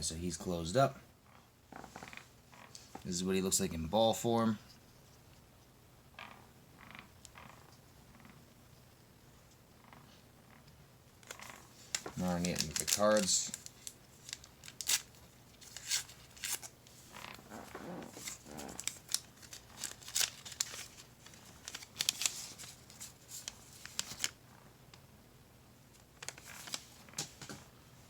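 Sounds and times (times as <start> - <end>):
packaging crinkling and rustling: 11.2 - 24.4, 26.2 - 27.6.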